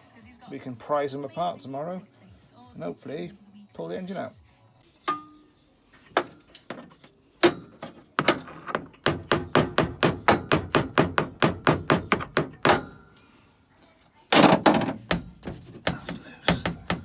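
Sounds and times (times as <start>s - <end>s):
tools knocking on metal: 6.0s - 13.1s, 14.4s - 17.0s.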